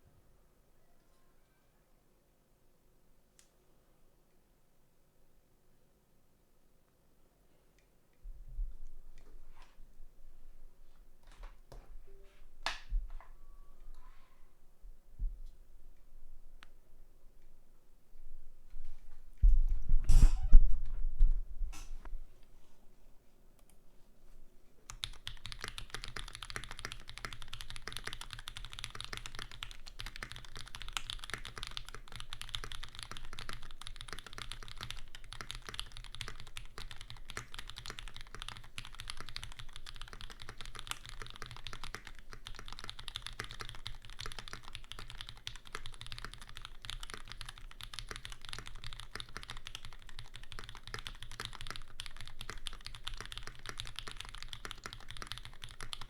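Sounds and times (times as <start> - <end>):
mechanical keyboard typing: 24.9 - 56.0.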